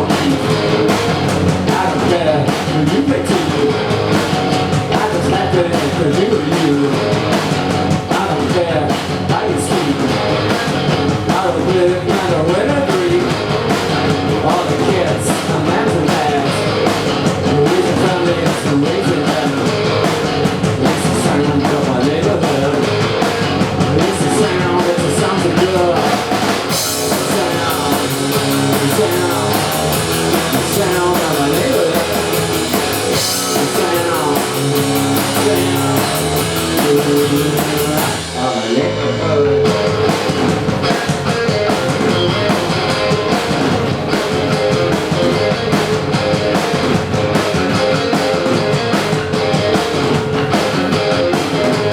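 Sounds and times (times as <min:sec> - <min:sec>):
person singing: 0:00.0 - 0:04.0, 0:04.9 - 0:07.2, 0:14.4 - 0:16.8, 0:17.4 - 0:20.0, 0:20.8 - 0:23.0, 0:23.8 - 0:39.9
rock band playing live: 0:00.0 - 0:51.9.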